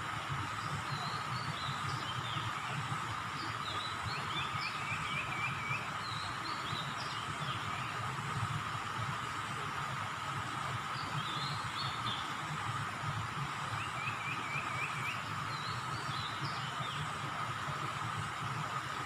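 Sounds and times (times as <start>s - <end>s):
small birds chirping: 10.9s - 12.4s, 13.7s - 17.1s.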